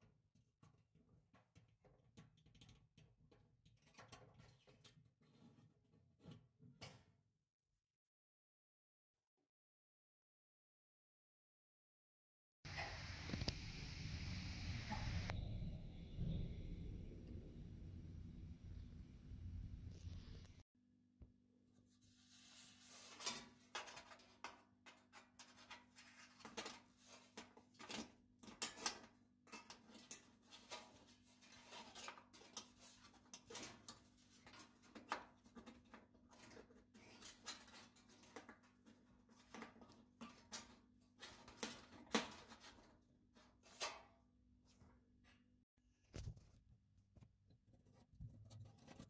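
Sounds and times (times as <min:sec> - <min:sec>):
low steady hum: 0:12.7 - 0:20.6.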